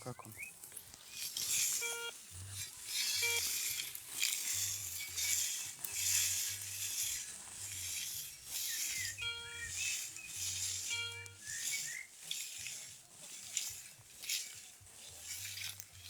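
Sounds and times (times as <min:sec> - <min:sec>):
metal detector coil swishing through grass: 0:00.1 - 0:16.0
metal detector beep: 0:01.2 - 0:12.8.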